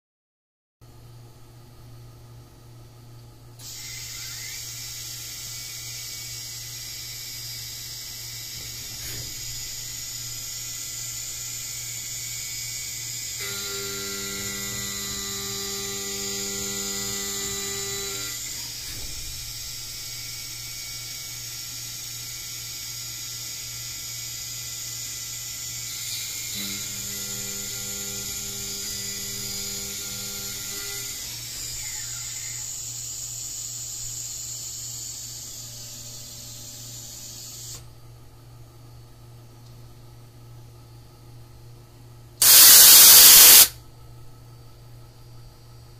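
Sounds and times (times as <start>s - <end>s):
machine hum and high whine: 0.8s - 45.9s
stepper motor tone: 3.6s - 21.6s, 25.6s - 37.8s, 42.4s - 43.7s.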